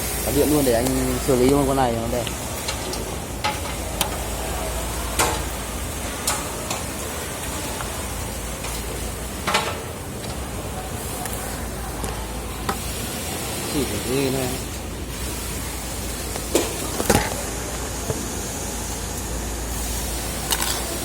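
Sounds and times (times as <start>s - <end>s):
steady background hiss: 0.0s - 21.0s.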